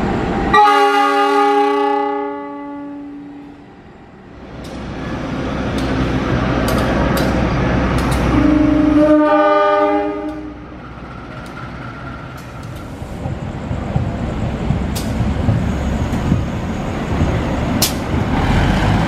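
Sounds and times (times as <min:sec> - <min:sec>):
train rumble: 0:00.0 - 0:19.0
locomotive air horn: 0:00.5 - 0:03.4, 0:08.2 - 0:10.6.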